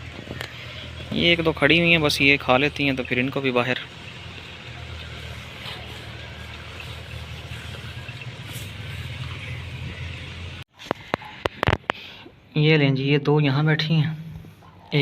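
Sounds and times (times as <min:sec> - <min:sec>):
low engine hum: 0:00.0 - 0:10.7.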